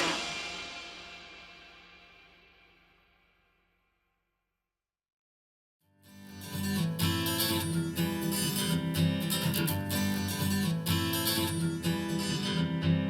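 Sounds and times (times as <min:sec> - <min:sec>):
strummed acoustic guitar: 0:05.9 - 0:13.0.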